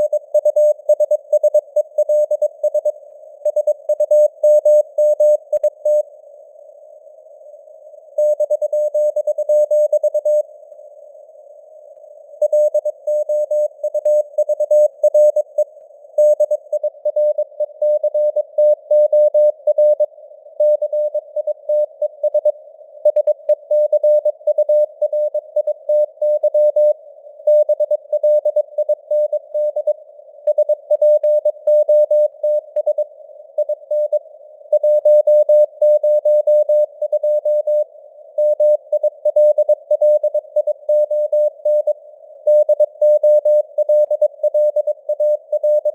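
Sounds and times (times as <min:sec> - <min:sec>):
receiver hiss: 0:00.0 - 0:45.9.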